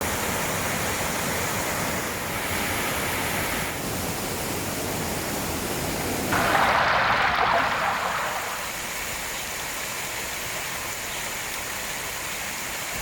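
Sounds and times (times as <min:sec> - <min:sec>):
falling rain: 0:00.0 - 0:13.0
running water: 0:00.0 - 0:13.0.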